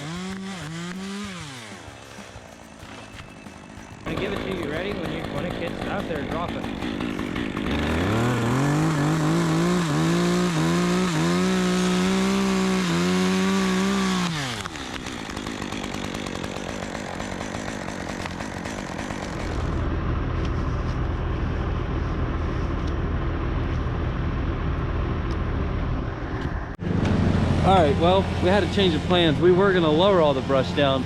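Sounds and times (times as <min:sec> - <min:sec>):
chainsaw running at full throttle: 0:00.0 - 0:19.8, 0:26.8 - 0:31.0
low engine rumble: 0:19.5 - 0:31.0.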